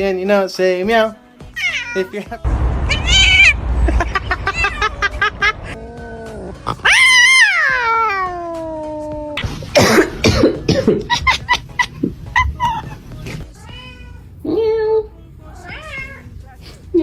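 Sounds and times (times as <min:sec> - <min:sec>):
cat meowing: 0:01.6 - 0:02.1, 0:02.9 - 0:03.6, 0:06.6 - 0:09.4, 0:13.6 - 0:14.2, 0:15.6 - 0:16.3.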